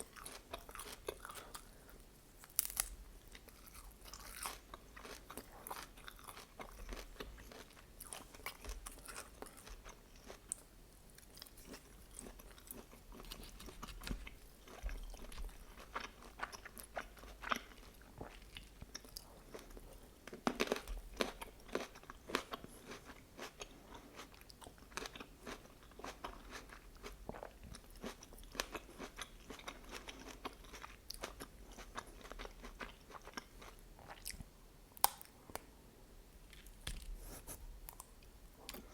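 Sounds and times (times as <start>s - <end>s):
crunchy chewing of food: 0.0s - 35.3s.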